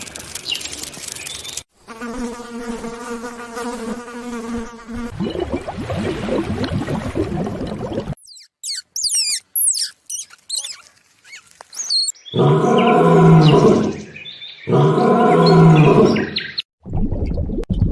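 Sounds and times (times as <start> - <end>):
high bird chirps: 8.2 - 14.8
large animal calling: 12.3 - 14.1, 14.7 - 16.5.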